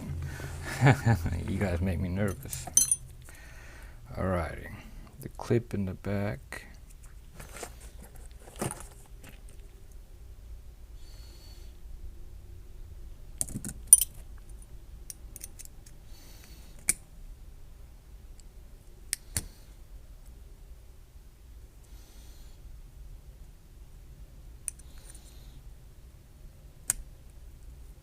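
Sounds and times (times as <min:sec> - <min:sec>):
metallic clicks and clinks: 0:02.2 - 0:03.1, 0:13.4 - 0:14.7, 0:15.3 - 0:16.0.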